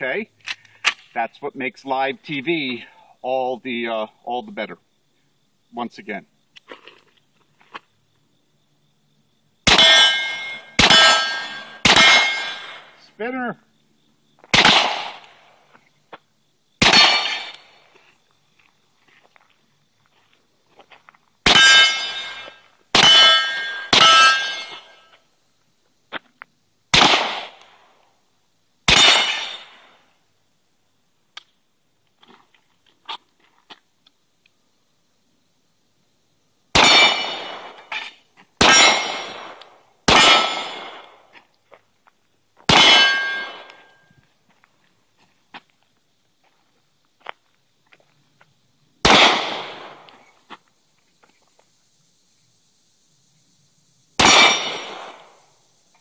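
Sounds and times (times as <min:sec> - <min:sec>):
gunshots: 0:09.6 - 0:13.0, 0:14.5 - 0:15.3, 0:16.8 - 0:17.6, 0:21.5 - 0:24.9, 0:26.9 - 0:27.6, 0:28.9 - 0:29.9, 0:36.8 - 0:37.9, 0:38.6 - 0:41.2, 0:42.7 - 0:43.9, 0:49.0 - 0:50.1, 0:54.2 - 0:55.4
steel targets ringing: 0:09.7 - 0:12.9, 0:16.8 - 0:17.6, 0:21.5 - 0:25.1, 0:28.9 - 0:29.8, 0:36.8 - 0:39.5, 0:40.1 - 0:41.0, 0:42.7 - 0:44.2.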